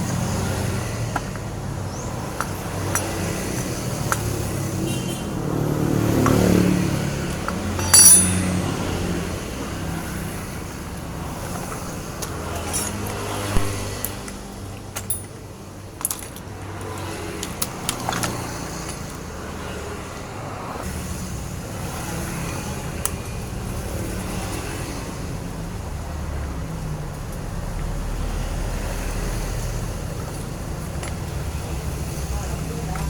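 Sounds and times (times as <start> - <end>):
vehicle engine rumble: 0.0 - 33.0
sharp metallic clicks: 7.3 - 8.9.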